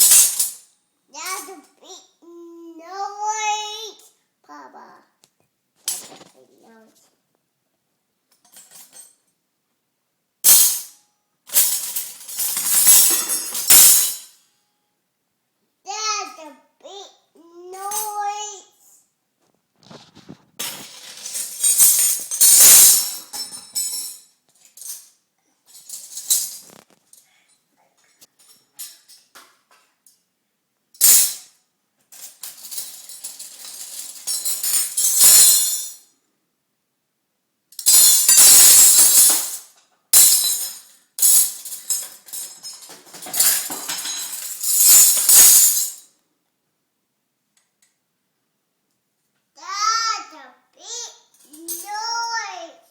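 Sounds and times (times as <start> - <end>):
metal spoons jangling and clattering: 0.0 - 1.7, 8.3 - 9.3, 10.5 - 14.4, 17.8 - 18.3, 20.6 - 27.5, 28.2 - 29.4, 31.0 - 36.1, 37.8 - 46.1, 51.3 - 52.2.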